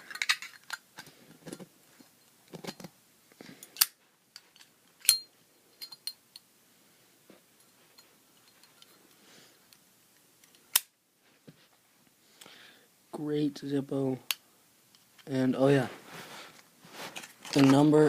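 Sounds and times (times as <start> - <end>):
metallic clicks and clinks of lighter: 5.0 - 6.4.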